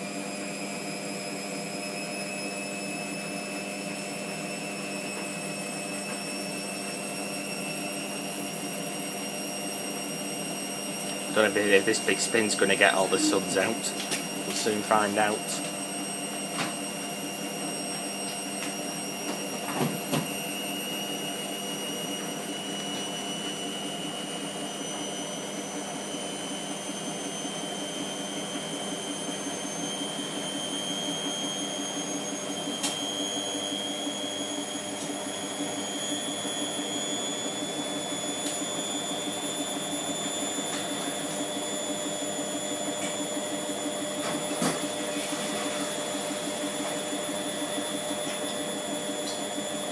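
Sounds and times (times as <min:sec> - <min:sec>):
washing machine spinning: 0:00.0 - 0:49.9.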